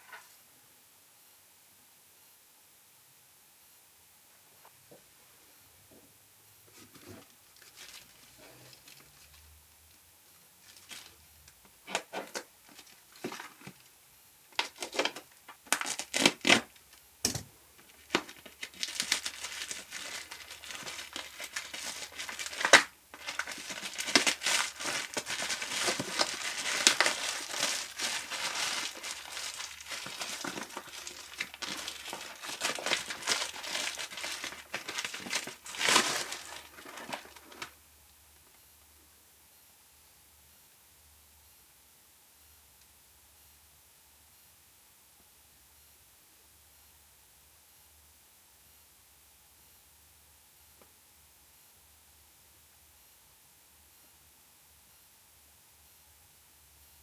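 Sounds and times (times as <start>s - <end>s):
packaging crinkling: 6.9s - 9.5s, 10.6s - 11.2s, 11.8s - 13.9s, 14.5s - 37.8s.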